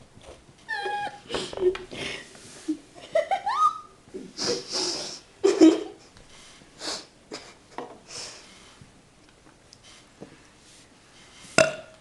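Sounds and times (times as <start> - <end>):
person straining to burp: 11.6 - 12.0.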